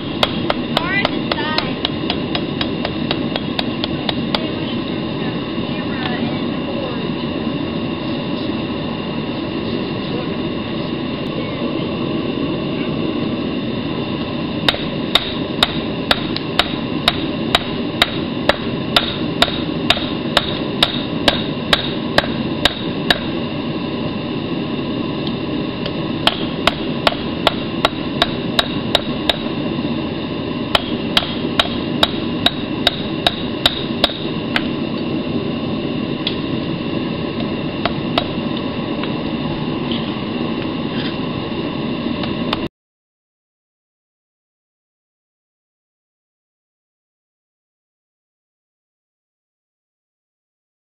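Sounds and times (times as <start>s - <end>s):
hammer striking hot steel on anvil: 0.0s - 4.5s, 14.6s - 23.4s, 25.8s - 29.6s, 30.7s - 34.8s, 37.8s - 38.4s
forge rushing noise: 0.0s - 42.7s.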